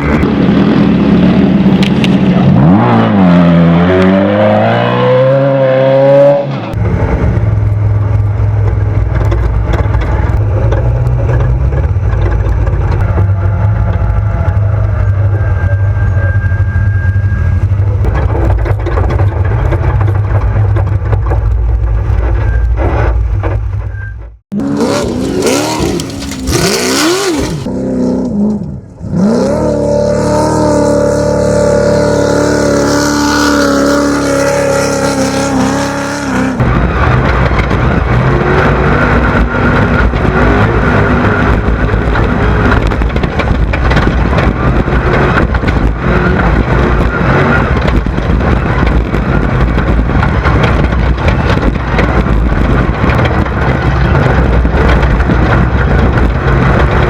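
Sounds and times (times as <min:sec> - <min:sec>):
buggy engines revving: 0:00.0 - 0:23.8, 0:24.5 - 0:57.0
wind rumble: 0:00.0 - 0:57.0.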